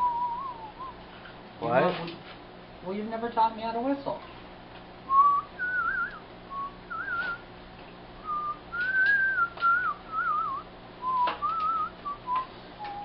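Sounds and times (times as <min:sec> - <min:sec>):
person whistling a tune: 0:00.0 - 0:01.0, 0:05.1 - 0:07.4, 0:08.2 - 0:13.0.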